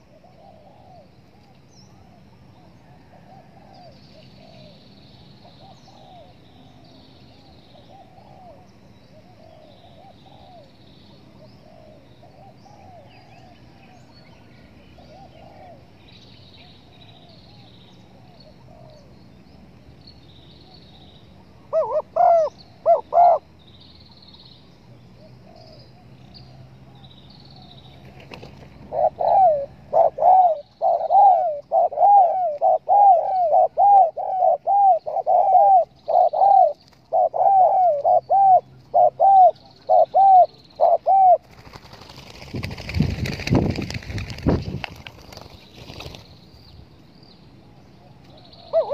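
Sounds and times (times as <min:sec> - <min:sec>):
small birds chirping: 0:03.8 - 0:48.9
doves cooing: 0:15.0 - 0:16.0, 0:21.7 - 0:23.5, 0:28.0 - 0:46.2, 0:48.1 - 0:48.9.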